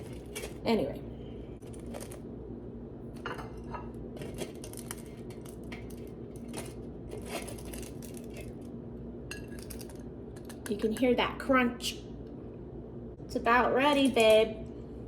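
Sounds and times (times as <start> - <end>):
steady low hum: 0.0 - 15.0
breaded chicken crunching: 4.2 - 8.6.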